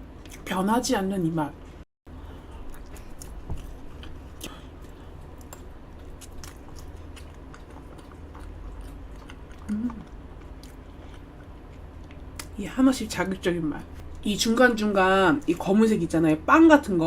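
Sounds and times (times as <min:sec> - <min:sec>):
chewing with wet mouth clicks: 0:02.4 - 0:12.6
person humming: 0:09.6 - 0:10.0.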